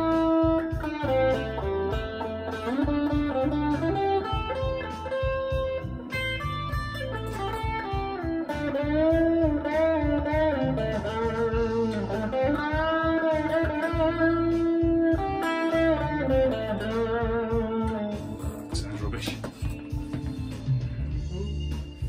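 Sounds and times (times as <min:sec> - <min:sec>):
backing track with drums and bass: 0:00.0 - 0:22.0
electric guitar lead with bends: 0:00.0 - 0:22.0.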